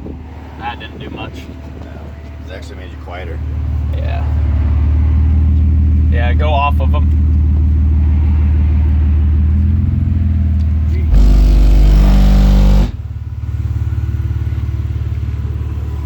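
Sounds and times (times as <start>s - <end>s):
subwoofer deep bass tones: 10.9s - 13.4s.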